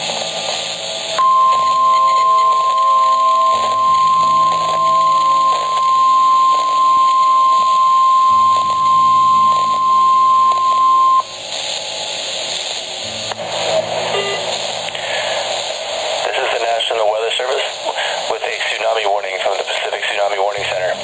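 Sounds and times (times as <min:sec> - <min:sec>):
high-pitched alert tone: 0:01.2 - 0:06.7, 0:14.1 - 0:14.5.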